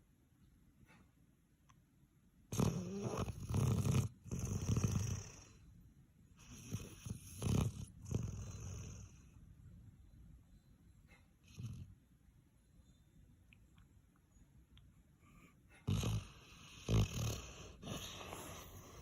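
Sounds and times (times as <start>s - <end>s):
puppy snoring: 2.5s - 5.8s, 6.4s - 9.4s, 11.1s - 12.0s, 15.2s - 19.0s.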